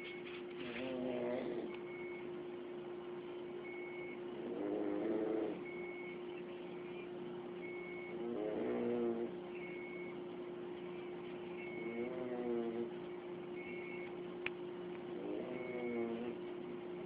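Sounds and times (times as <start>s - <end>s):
steady hum: 0.0s - 17.0s
person snoring loudly: 0.7s - 1.7s, 4.4s - 5.6s, 8.2s - 9.4s, 11.8s - 12.9s, 15.2s - 16.4s.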